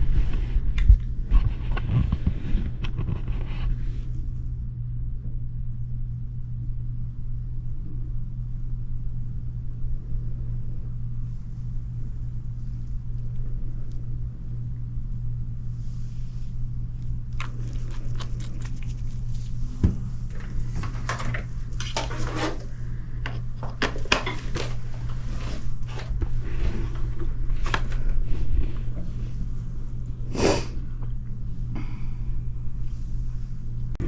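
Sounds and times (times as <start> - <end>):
steady low hum: 0.0 - 34.0
hand tools clicking and scraping: 20.3 - 26.2.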